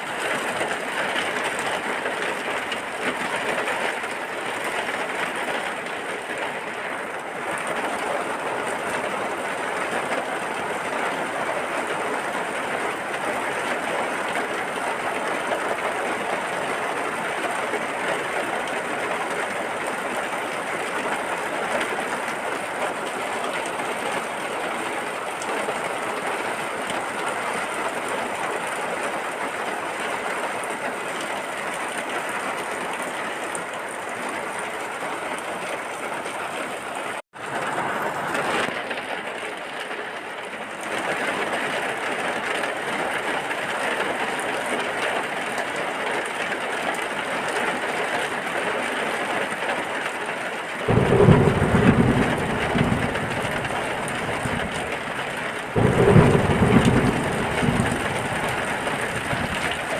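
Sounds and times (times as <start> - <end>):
heavy rain: 0.0 - 59.9
thunder rumbling: 50.9 - 59.9.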